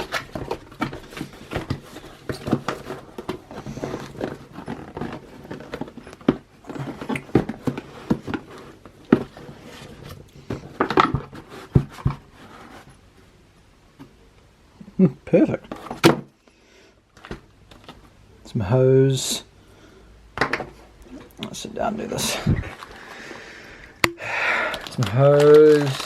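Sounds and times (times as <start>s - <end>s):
packaging rustling: 0.0s - 12.8s, 22.2s - 23.6s, 24.4s - 26.0s.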